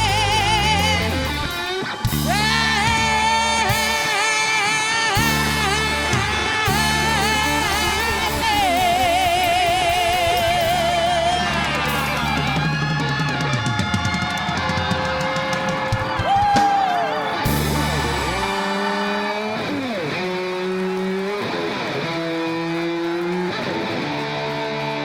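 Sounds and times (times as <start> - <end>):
electric guitar vibrato note: 0.0 - 14.3, 17.4 - 21.3
live rock band playing: 0.0 - 25.0.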